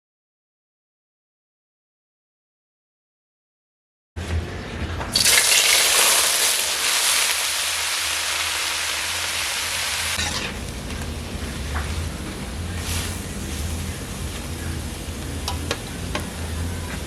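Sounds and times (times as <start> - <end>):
food sizzling in hot oil: 5.2 - 10.8.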